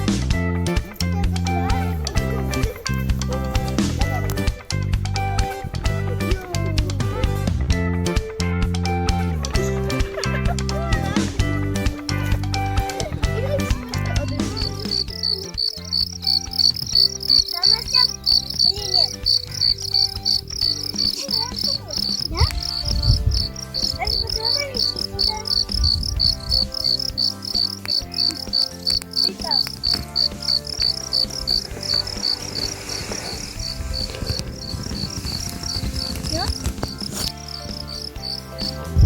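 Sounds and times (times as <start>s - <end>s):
insects chirping: 13.8s - 39.0s.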